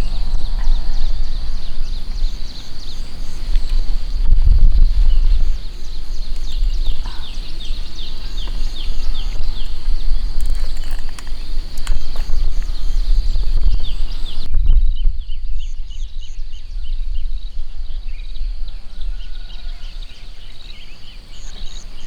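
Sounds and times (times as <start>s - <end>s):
steady high drone: 0.0s - 14.5s
wind rumbling on microphone: 0.0s - 22.0s
light clicks: 8.1s - 14.5s.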